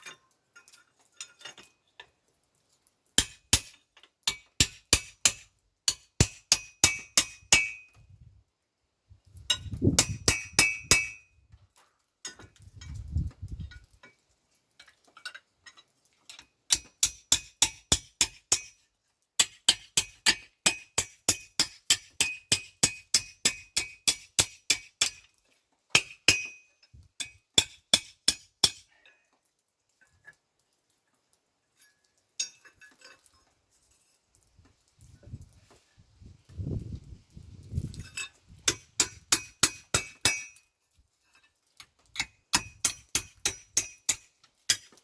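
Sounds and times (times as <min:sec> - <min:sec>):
hammer striking steel on anvil: 0:03.2 - 0:08.0, 0:09.5 - 0:11.3, 0:16.7 - 0:18.8, 0:19.4 - 0:25.2, 0:26.0 - 0:26.6, 0:27.2 - 0:28.9, 0:38.6 - 0:40.6, 0:42.2 - 0:44.9.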